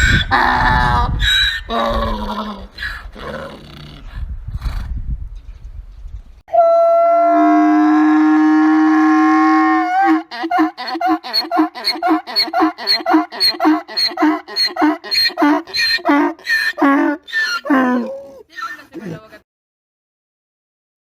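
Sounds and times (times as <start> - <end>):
donkey braying: 0.0 - 3.7, 8.8 - 19.4.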